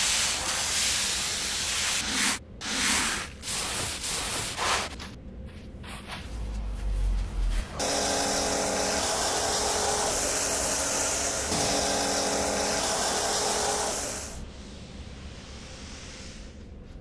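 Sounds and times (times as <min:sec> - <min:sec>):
cleaning machine hissing: 0:00.0 - 0:05.0, 0:07.8 - 0:14.8
motor hum: 0:07.2 - 0:14.4.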